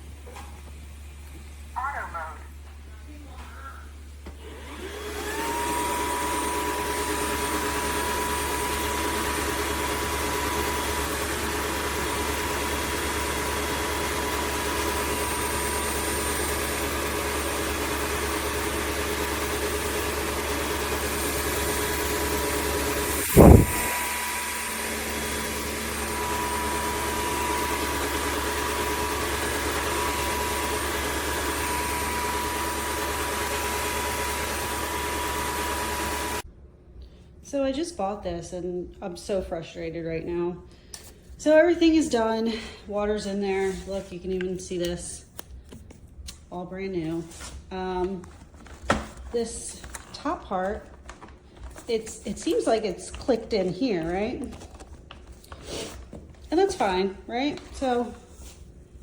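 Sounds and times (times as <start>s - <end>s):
vacuum mop motor whining: 4.2s - 36.4s, 47.8s - 58.7s.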